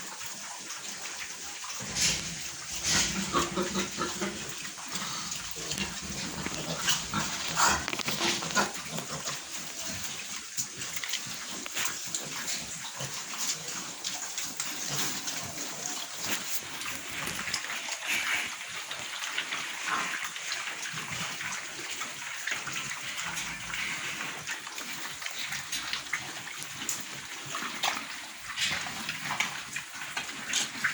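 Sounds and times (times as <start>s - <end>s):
pigs: 0.0s - 30.9s
wet splashing and sloshing: 1.4s - 13.3s.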